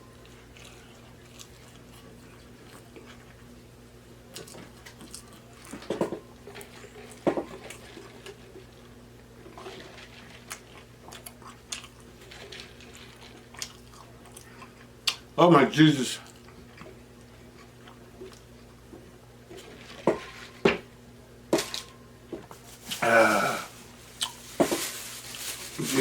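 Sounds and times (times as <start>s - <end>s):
chewing food: 0.2s - 15.4s, 16.2s - 20.0s.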